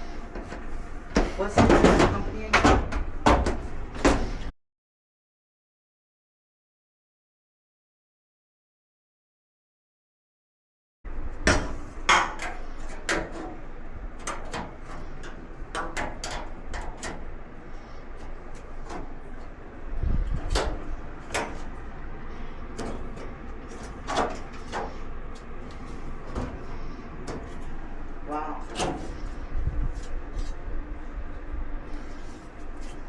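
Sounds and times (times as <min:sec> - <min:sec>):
heavy thump and rumble: 0:00.3 - 0:04.5, 0:18.8 - 0:28.0, 0:28.7 - 0:30.2
clicks and knocks of handled parts: 0:14.2 - 0:17.2.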